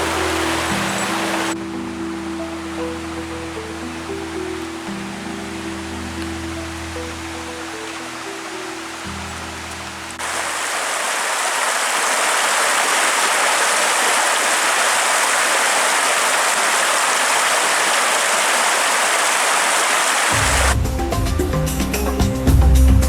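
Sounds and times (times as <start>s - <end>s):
background music: 0.0s - 10.2s, 20.3s - 23.0s
waterfall rushing: 0.0s - 20.8s.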